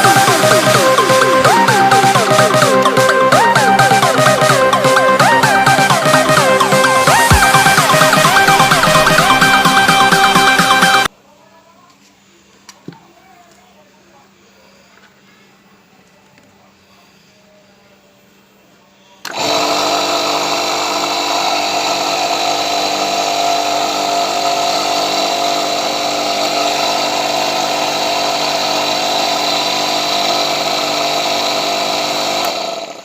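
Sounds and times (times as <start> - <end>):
pressure washer motor whining: 0.0 - 11.1, 19.2 - 33.0.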